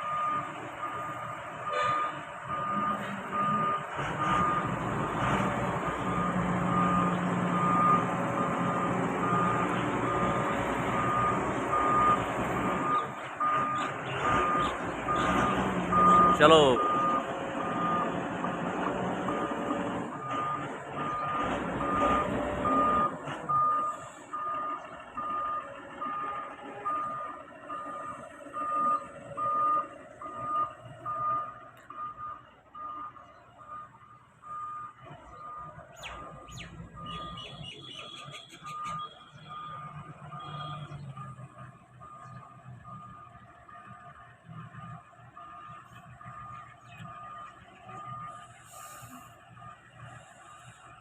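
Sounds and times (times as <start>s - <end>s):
diesel engine running: 0.0s - 37.7s
machinery warning alarm beeping: 0.0s - 43.4s.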